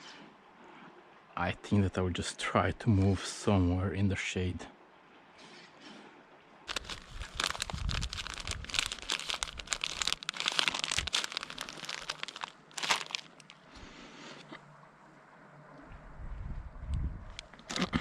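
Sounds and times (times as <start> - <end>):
footsteps crunching dry leaves: 6.7 - 13.6.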